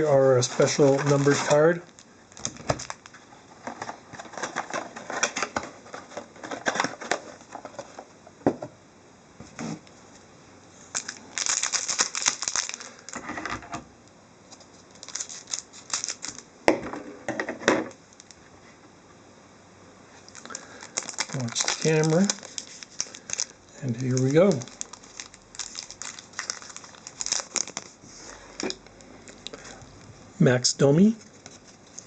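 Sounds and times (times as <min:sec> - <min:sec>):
foil wrappers crinkling: 0:00.4 - 0:07.9, 0:10.9 - 0:13.3, 0:14.5 - 0:16.5, 0:18.1 - 0:18.4, 0:20.2 - 0:28.8, 0:31.0 - 0:32.0.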